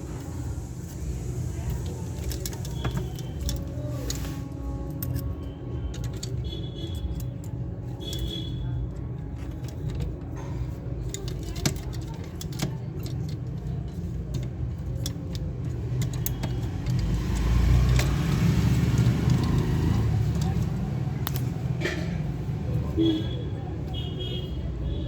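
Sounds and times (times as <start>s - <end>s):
metal toy gun clicks and rattles: 1.5s - 4.3s, 4.9s - 21.9s.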